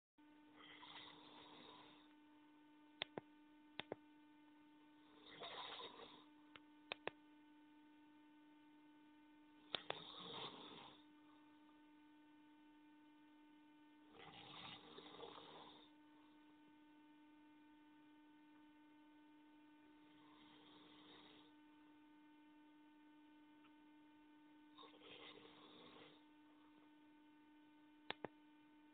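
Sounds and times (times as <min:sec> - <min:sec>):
electrical hum: 0:00.2 - 0:28.9
person snoring: 0:00.5 - 0:02.1, 0:05.0 - 0:06.3, 0:09.6 - 0:11.1, 0:14.1 - 0:16.0, 0:20.0 - 0:21.6, 0:24.8 - 0:26.3.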